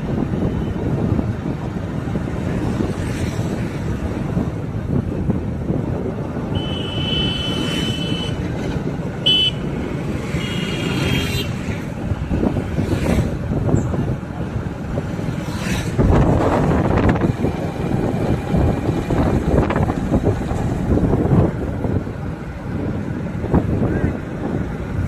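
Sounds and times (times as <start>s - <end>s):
traffic engines rumbling: 0.0s - 25.0s
wind on microphone: 0.0s - 25.0s
vehicle horns honking: 6.5s - 8.6s, 9.2s - 11.6s.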